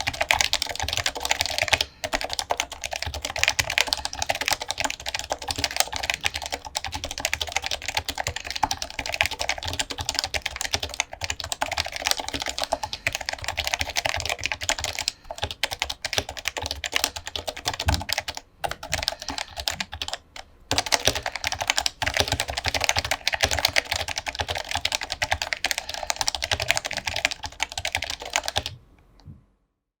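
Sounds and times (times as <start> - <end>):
fast typing on a keyboard: 0.0 - 28.8.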